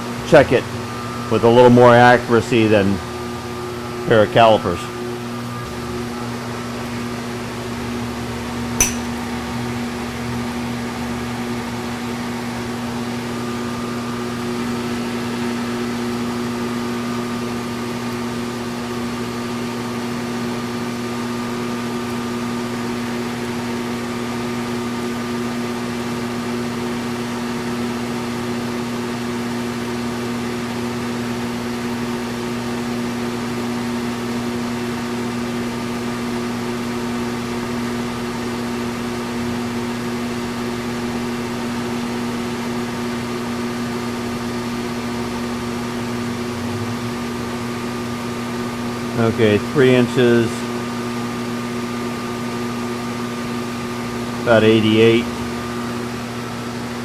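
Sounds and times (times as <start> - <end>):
sharp click: 8.8 - 9.1.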